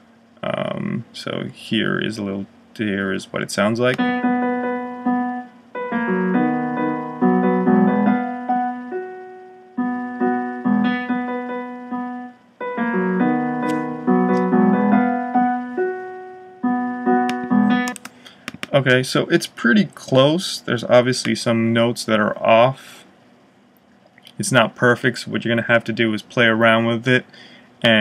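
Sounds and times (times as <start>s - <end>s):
piano playing chords: 3.9s - 18.0s.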